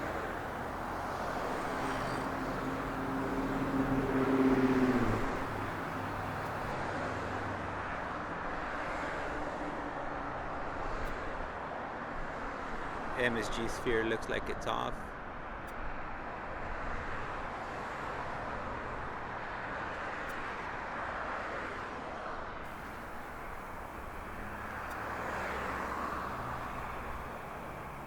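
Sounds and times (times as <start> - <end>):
vehicle engine rising in pitch: 0.0 - 6.7, 22.8 - 28.0
road traffic noise: 0.0 - 10.0, 16.7 - 28.0.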